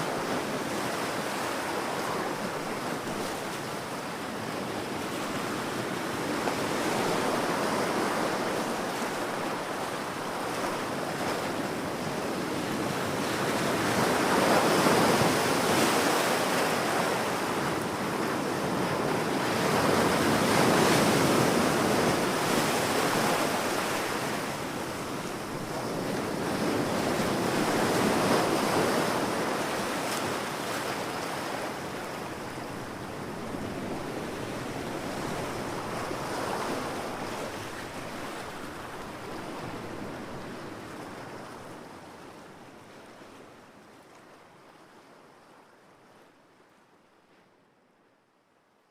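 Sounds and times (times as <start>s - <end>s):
ocean waves washing ashore: 0.0s - 47.0s.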